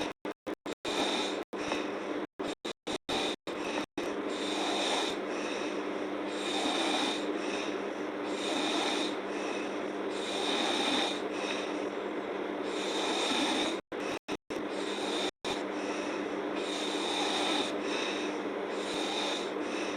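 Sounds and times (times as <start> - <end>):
girl snoring: 0.7 - 1.8, 2.5 - 11.8, 12.6 - 19.9.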